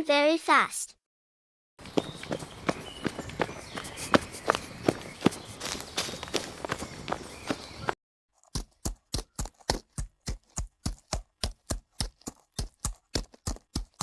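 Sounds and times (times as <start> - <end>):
rustling with footfalls: 1.8 - 8.0
short dull thuds: 1.8 - 8.0.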